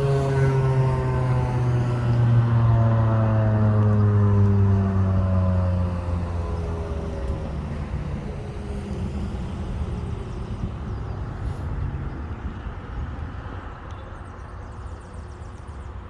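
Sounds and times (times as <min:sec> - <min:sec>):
tornado warning siren winding down: 0:00.0 - 0:11.6.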